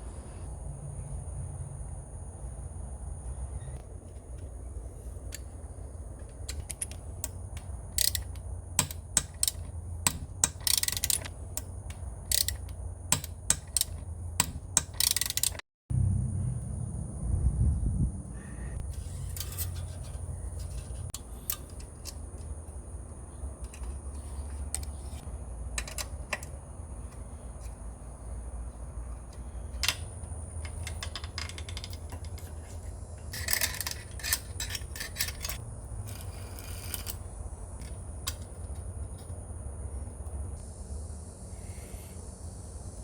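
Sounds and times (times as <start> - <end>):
steady low hum: 0.0 - 43.0
rattling: 18.8 - 22.7, 29.0 - 38.8.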